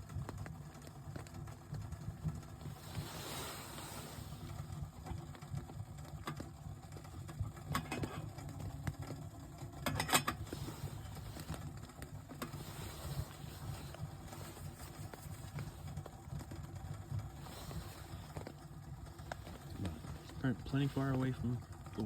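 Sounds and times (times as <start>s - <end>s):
rain pattering on tent fabric: 0.0s - 22.0s.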